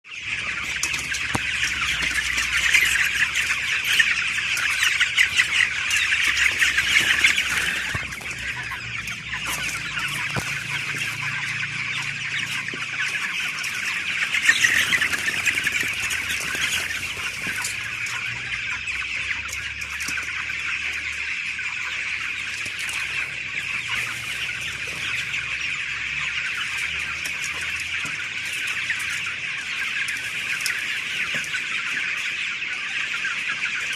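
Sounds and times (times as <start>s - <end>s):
chicks cheeping: 0.0s - 33.9s.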